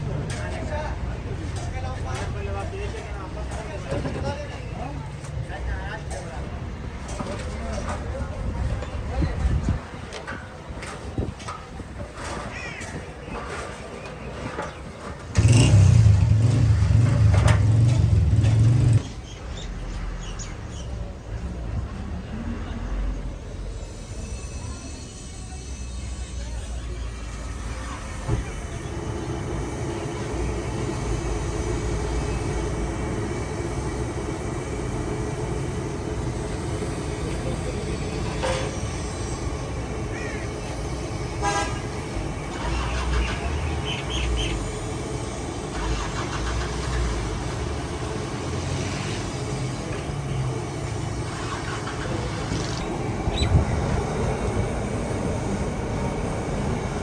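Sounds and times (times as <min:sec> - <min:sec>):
street traffic engines: 0:00.0 - 0:57.0
car horns honking: 0:40.2 - 0:44.2.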